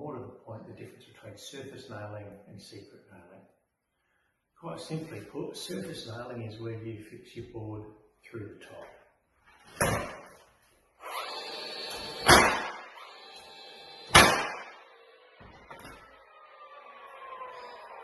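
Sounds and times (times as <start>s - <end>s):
hammer striking nails: 12.0s - 12.8s, 14.1s - 14.8s.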